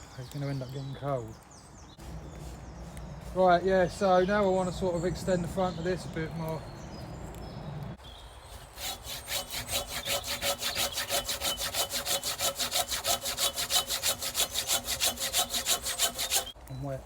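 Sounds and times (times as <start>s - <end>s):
hand saw cutting wood: 8.5s - 16.6s.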